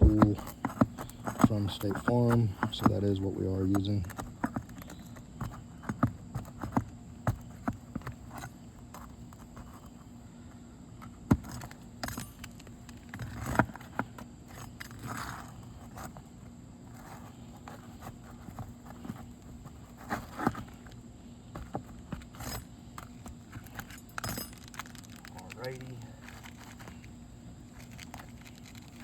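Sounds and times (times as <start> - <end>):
metal tool scraping under shingles: 0.0 - 5.2, 11.5 - 16.3.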